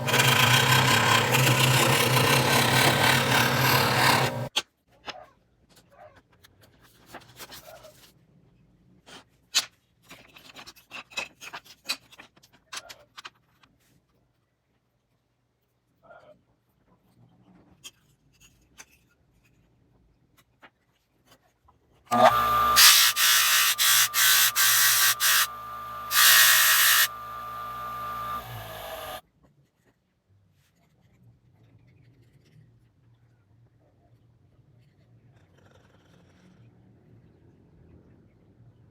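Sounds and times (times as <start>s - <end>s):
power tool motor whining: 0.0s - 4.5s, 22.1s - 29.2s
wood cutting noise: 0.0s - 4.5s, 22.1s - 29.2s.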